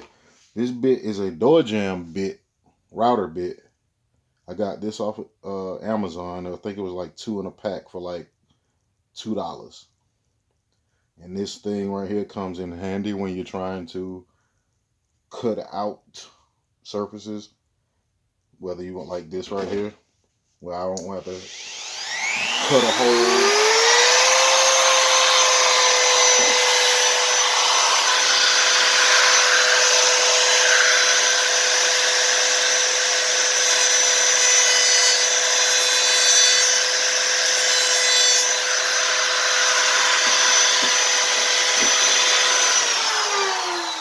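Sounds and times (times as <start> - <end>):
router motor whining while cutting: 21.2 - 44.0.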